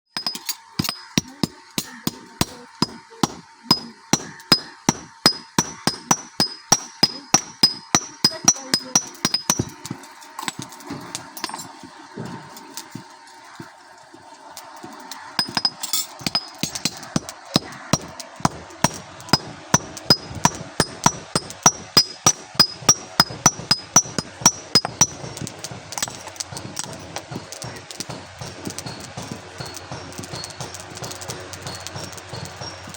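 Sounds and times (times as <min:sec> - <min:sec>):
hammer striking metal on anvil: 0:00.2 - 0:11.8, 0:15.4 - 0:32.9.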